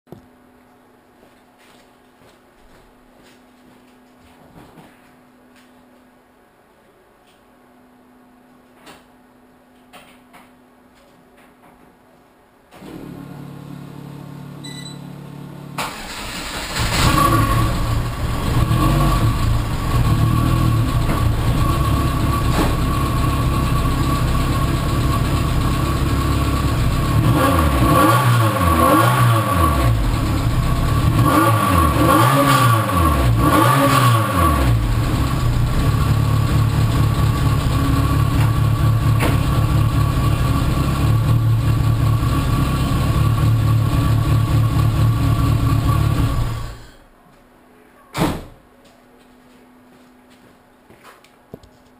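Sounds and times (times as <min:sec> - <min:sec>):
car engine starting and idling: 0:15.2 - 0:47.0
engine revving: 0:16.0 - 0:23.6, 0:26.5 - 0:46.8.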